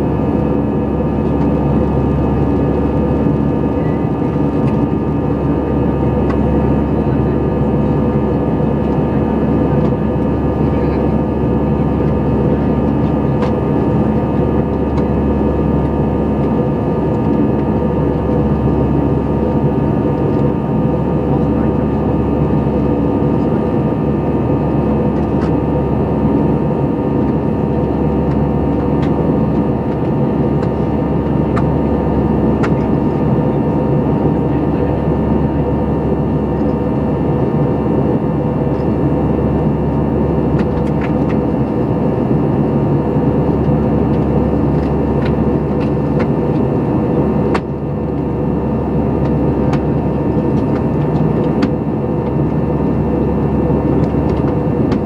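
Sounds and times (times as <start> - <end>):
airliner cabin drone: 0.0 - 55.0.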